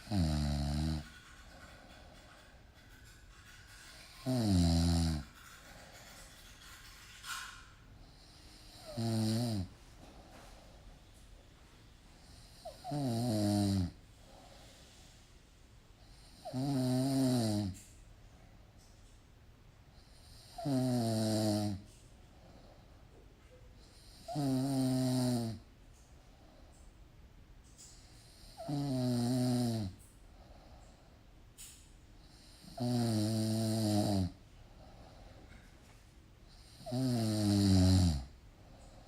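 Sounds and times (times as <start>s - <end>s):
loud snoring: 0.0s - 1.4s, 4.2s - 5.4s, 8.3s - 9.7s, 12.2s - 14.0s, 16.2s - 17.8s, 20.2s - 21.8s, 23.9s - 25.6s, 28.2s - 30.0s, 32.3s - 34.4s, 36.5s - 38.4s.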